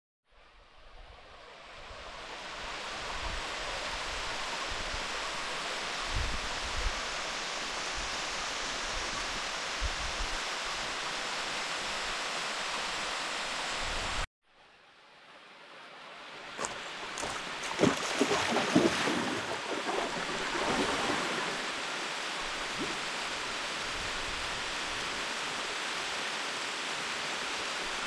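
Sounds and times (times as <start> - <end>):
fast-flowing water rushing: 16.3 - 28.0.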